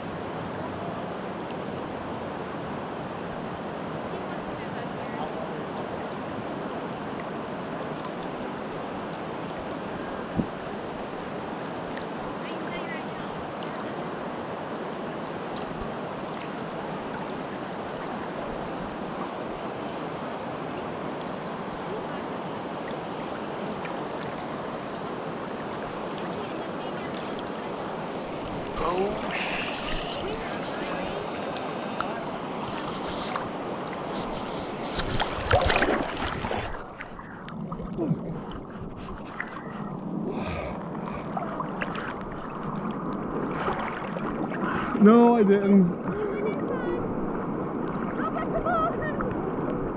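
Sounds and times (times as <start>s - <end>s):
river water rushing: 0.0s - 49.9s
faint small splashes: 13.5s - 14.1s, 21.2s - 39.9s, 41.1s - 45.0s.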